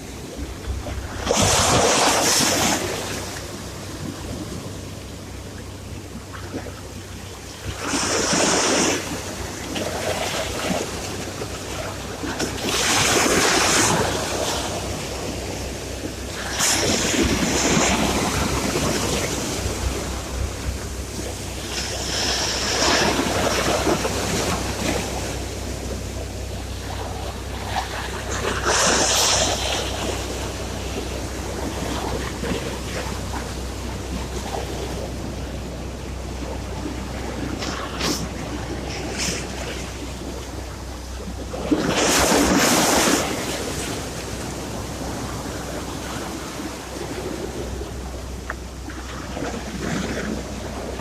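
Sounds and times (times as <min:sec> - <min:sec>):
sea waves breaking on shore: 0:00.0 - 0:51.0.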